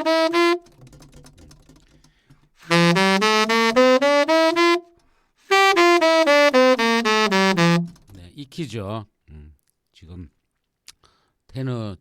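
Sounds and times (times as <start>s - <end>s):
tenor saxophone playing a scale: 0.0s - 1.0s, 2.6s - 8.2s.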